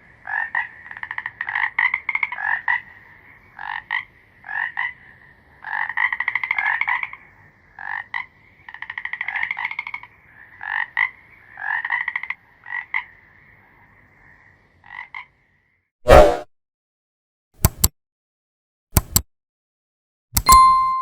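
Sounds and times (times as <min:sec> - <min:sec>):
distant frogs trilling: 0:00.0 - 0:15.9
frog croaking and trilling: 0:00.2 - 0:15.8.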